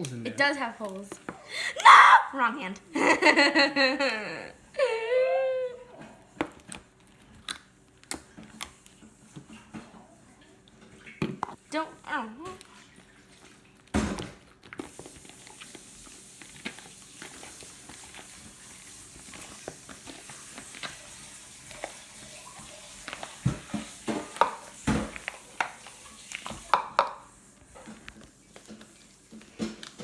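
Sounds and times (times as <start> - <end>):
slime squelching: 11.1 - 27.2.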